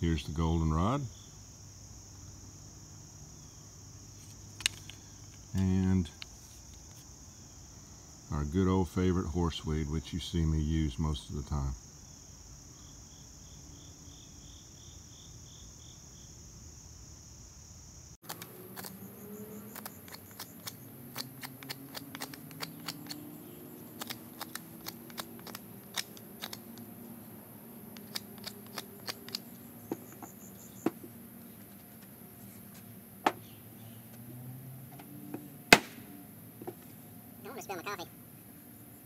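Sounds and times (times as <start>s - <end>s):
crickets chirping: 0.0s - 39.0s
small wooden pieces clicking: 4.6s - 5.4s, 18.2s - 19.0s, 19.7s - 23.3s, 23.9s - 26.9s, 28.0s - 30.3s.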